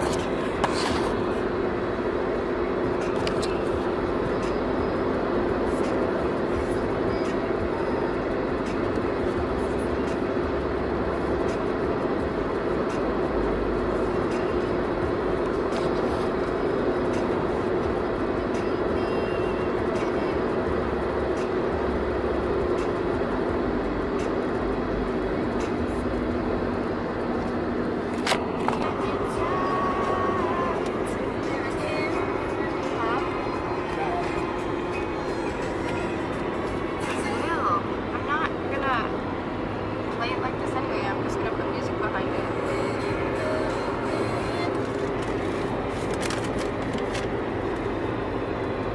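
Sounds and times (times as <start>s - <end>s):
vehicle rumble with low hum: 0.0s - 48.9s.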